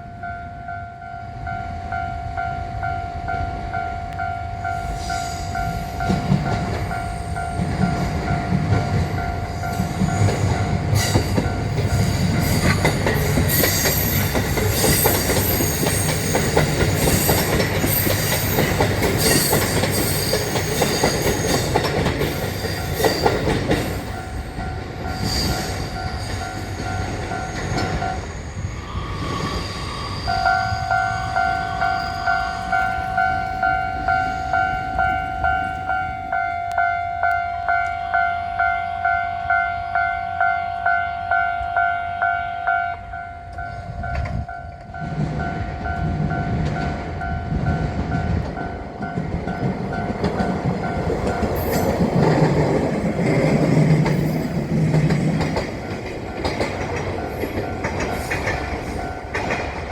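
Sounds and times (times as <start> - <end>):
railroad crossing bell ringing: 0.0 - 28.8, 30.2 - 59.8
train rumbling: 0.0 - 59.9
train wheels squealing: 4.6 - 8.1, 8.9 - 35.7, 49.6 - 59.5.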